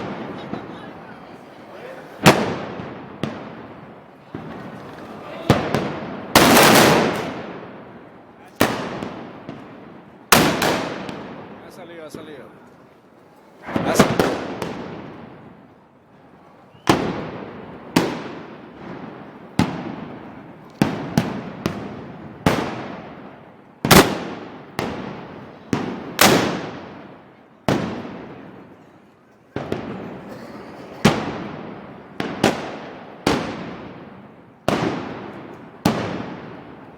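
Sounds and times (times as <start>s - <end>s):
loud gunpowder bangs echoing: 5.4s - 8.0s, 8.6s - 11.6s, 23.8s - 28.8s.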